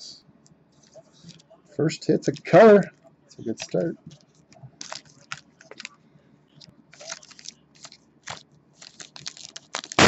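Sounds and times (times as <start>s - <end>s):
cards rustling and snapping: 3.4s - 6.0s, 6.6s - 10.0s.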